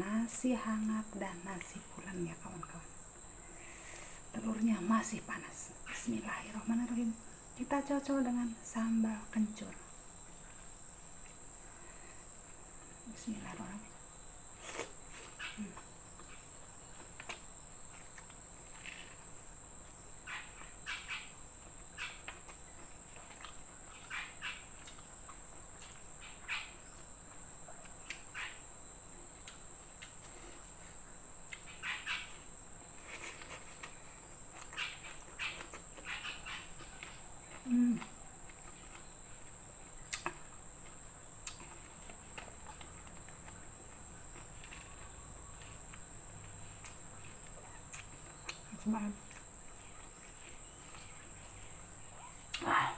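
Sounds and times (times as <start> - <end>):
crickets chirring: 0.0 - 52.9
chewing and mouth clicks: 14.6 - 28.6, 29.4 - 32.2, 33.0 - 52.7.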